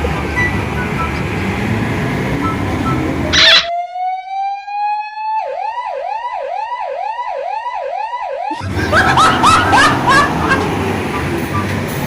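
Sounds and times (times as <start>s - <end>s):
siren wailing and yelping: 3.3s - 11.6s.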